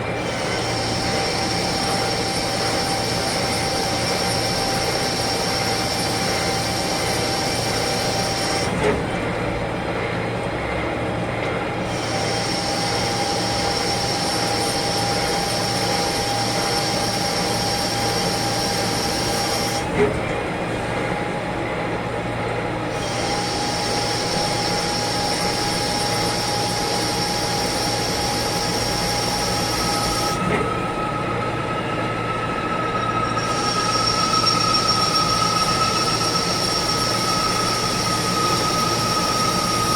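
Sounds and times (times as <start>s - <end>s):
lathe high whine: 0.0s - 20.0s, 20.7s - 39.9s.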